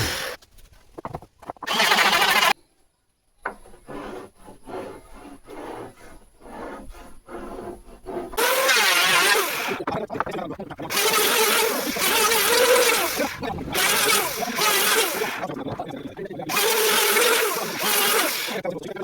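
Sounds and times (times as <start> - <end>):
woodworking power tool bursts: 0.0 - 0.4, 1.7 - 2.6, 8.4 - 9.8
quiet work sounds: 0.0 - 19.0.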